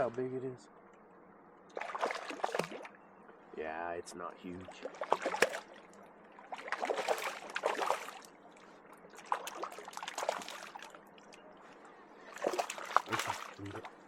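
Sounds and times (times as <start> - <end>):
fish splashing in water: 1.7 - 3.0, 4.6 - 11.4, 12.3 - 14.0.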